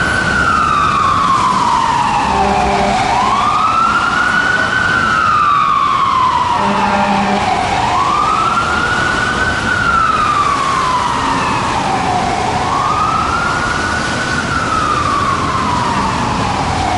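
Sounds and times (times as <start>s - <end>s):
electronic siren wailing: 0.4s - 4.1s, 5.0s - 8.9s.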